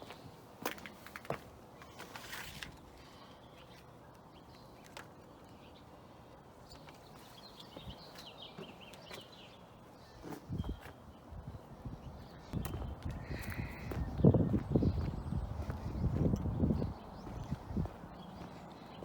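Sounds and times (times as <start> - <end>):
footsteps walking: 12.5 - 19.0.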